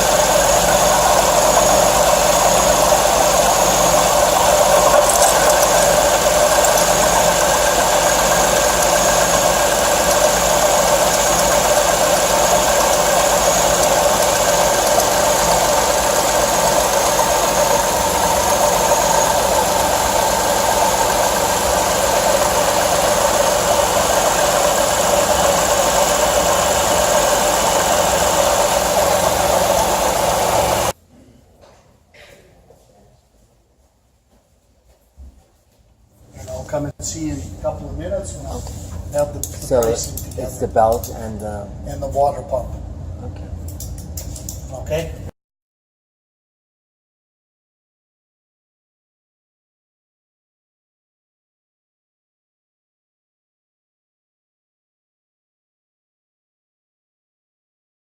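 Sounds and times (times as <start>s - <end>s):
car engine running: 0.0s - 30.9s.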